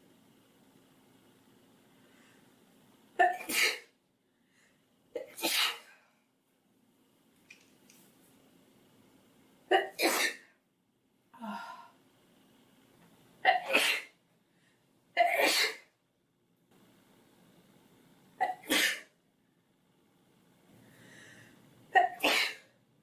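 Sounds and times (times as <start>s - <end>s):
girl sneezing: 5.2s - 5.9s, 13.5s - 14.1s, 15.2s - 15.9s, 22.0s - 22.6s.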